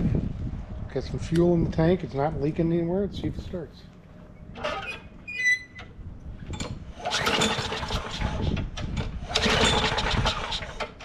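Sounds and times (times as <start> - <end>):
lawn mower engine sputtering: 4.4 - 11.0
pull-start cord: 4.6 - 11.0.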